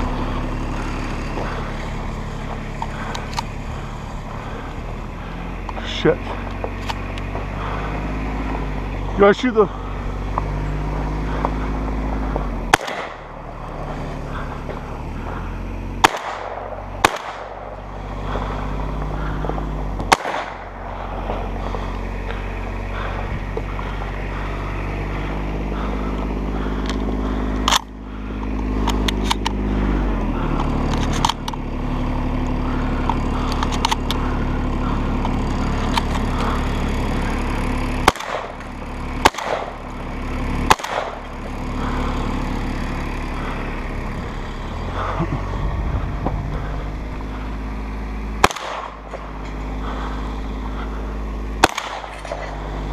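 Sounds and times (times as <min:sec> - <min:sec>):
utility vehicle engine running: 0:00.0 - 0:52.9
shotgun shots: 0:12.7 - 0:13.3, 0:16.0 - 0:17.7, 0:20.1 - 0:20.8, 0:38.0 - 0:38.6, 0:39.2 - 0:39.8, 0:40.6 - 0:41.2, 0:48.4 - 0:49.2, 0:51.6 - 0:52.6.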